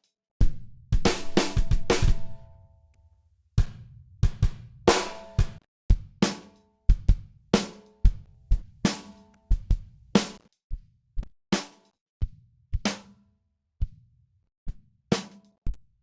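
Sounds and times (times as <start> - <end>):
kick and snare drum beat: 0.4 - 2.4, 3.6 - 10.4, 11.6 - 13.2.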